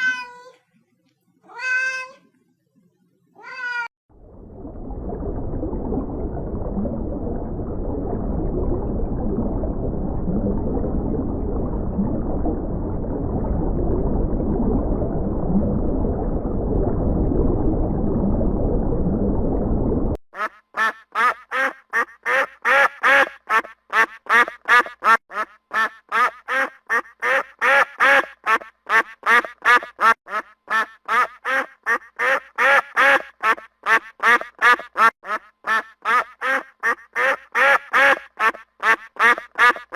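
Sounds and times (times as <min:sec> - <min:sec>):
ducks quacking: 0:20.4 - 0:39.9.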